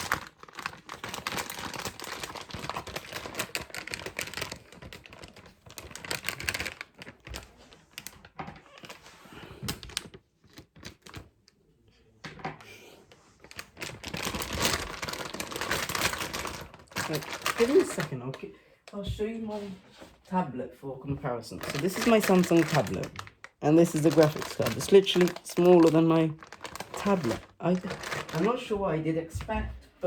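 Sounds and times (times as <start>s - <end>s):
packaging clicks and rustles: 0.0s - 11.6s, 13.4s - 18.4s, 21.6s - 28.8s.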